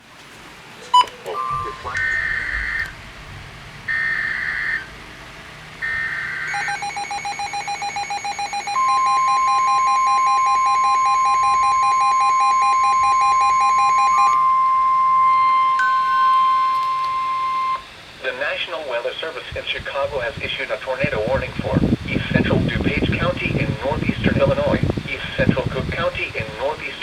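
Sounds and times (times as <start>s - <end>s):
rapidly pulsing electronic beep: 1.0s - 3.1s, 3.9s - 4.9s, 5.8s - 17.9s
steady warning alarm tone: 1.0s - 18.4s
warbling digital data bursts: 1.3s - 14.4s.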